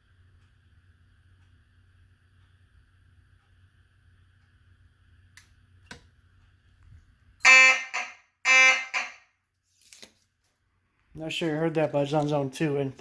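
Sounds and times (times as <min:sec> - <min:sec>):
fire alarm horn blasts: 0:07.4 - 0:09.4.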